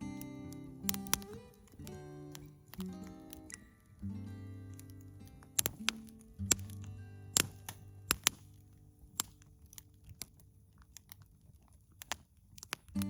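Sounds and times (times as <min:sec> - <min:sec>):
soft acoustic guitar music: 0:00.0 - 0:10.2
campfire crackling and popping: 0:00.0 - 0:13.0.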